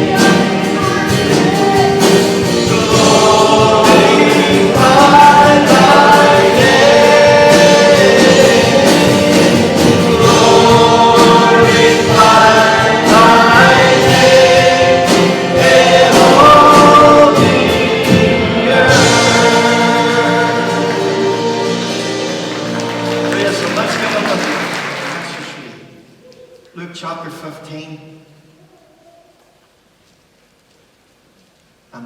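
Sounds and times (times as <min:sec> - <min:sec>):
group singing a worship song: 0:00.0 - 0:24.2
instrumental accompaniment: 0:00.0 - 0:25.7.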